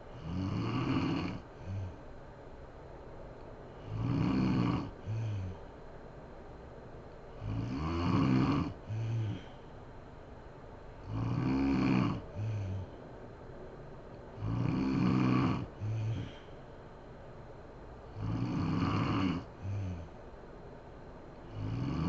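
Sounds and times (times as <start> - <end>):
woman snoring: 0.2 - 2.0, 3.8 - 5.6, 7.4 - 9.6, 11.0 - 13.0, 14.4 - 16.5, 18.1 - 20.2, 21.5 - 22.0.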